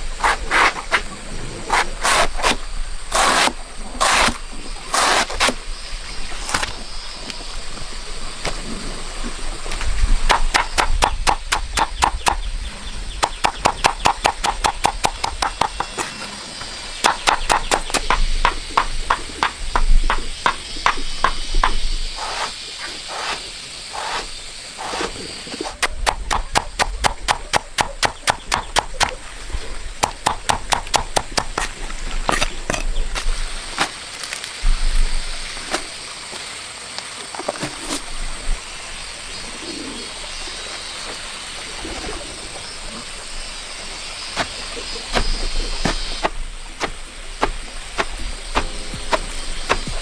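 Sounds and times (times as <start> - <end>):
knife chopping on cutting board: 45.2 - 50.0.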